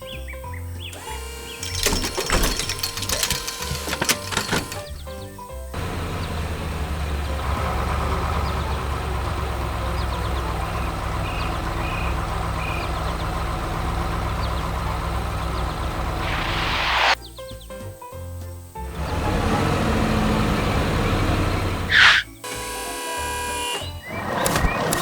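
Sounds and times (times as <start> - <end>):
heavy vehicle engine idling: 5.7 - 17.1, 18.8 - 22.1.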